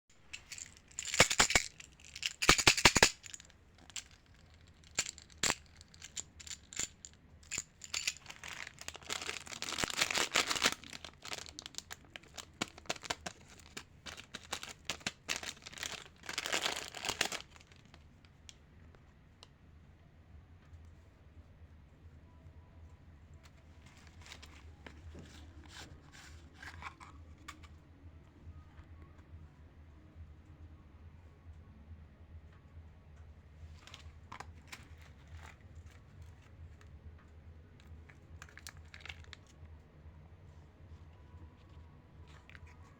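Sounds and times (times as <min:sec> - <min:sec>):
plastic candy wrappers crinkling: 0:00.2 - 0:18.0, 0:38.1 - 0:39.5.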